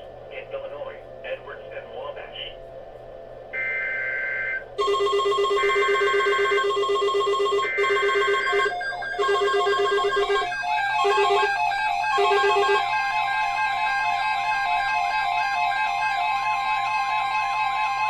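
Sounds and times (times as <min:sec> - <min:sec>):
steady pulsing electronic tones: 0:03.6 - 0:18.0.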